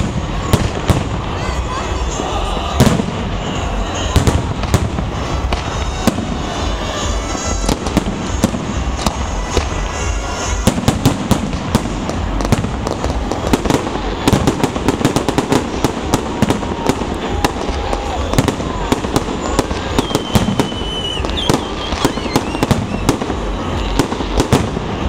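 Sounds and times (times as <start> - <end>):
fireworks bangs and crackles: 0.0 - 25.0.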